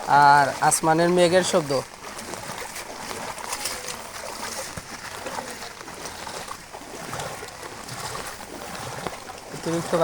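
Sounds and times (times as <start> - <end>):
floodwater rushing: 0.0 - 10.0.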